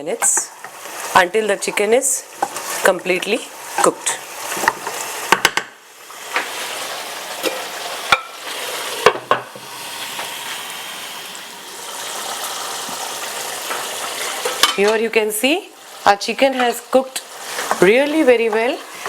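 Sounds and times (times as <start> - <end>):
chicken sizzling in a pot: 0.0 - 19.0.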